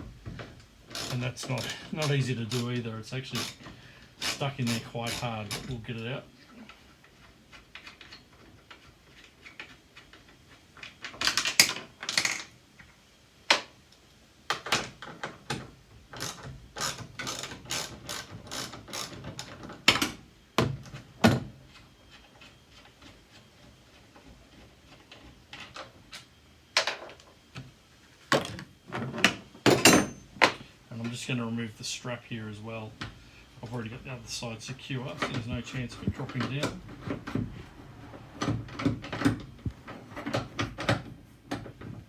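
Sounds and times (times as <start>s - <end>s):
hand ratchet clicking: 0.9s - 5.8s, 16.2s - 19.5s.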